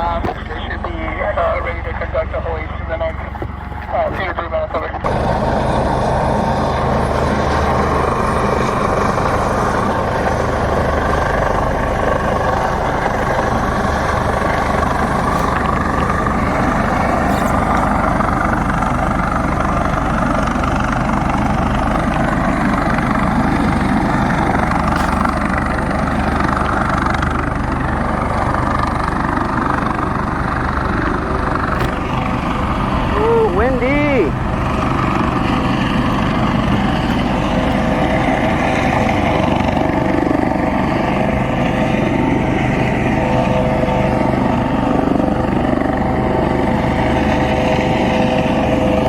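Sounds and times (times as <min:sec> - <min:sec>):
helicopter hovering: 0:00.0 - 0:49.0.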